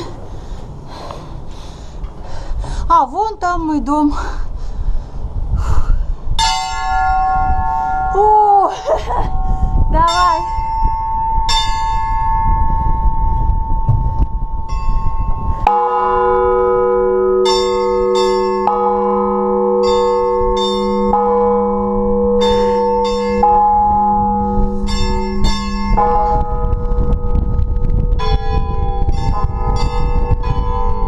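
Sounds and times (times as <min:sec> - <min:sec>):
wind rumble on microphone: 0:00.0 - 0:31.0
deep church bell ringing: 0:06.4 - 0:31.0
small high bells struck: 0:28.2 - 0:31.0.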